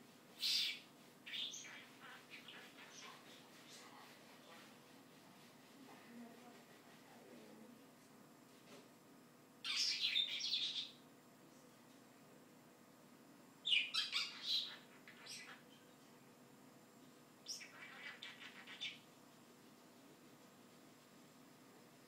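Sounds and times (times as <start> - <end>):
bird high-pitched chatter: 0.4 - 3.9, 9.6 - 11.0, 13.7 - 15.8, 17.4 - 19.1.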